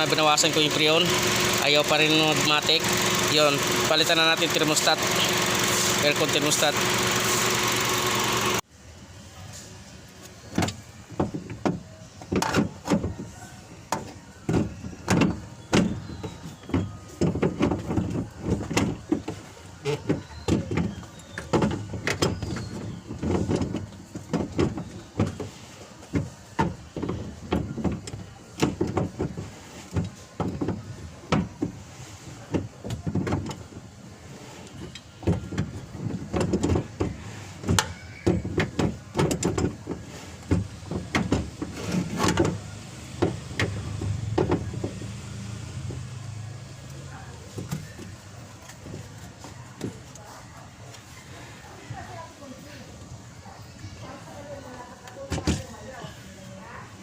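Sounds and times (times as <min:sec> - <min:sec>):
car engine running: 0:00.6 - 0:08.6.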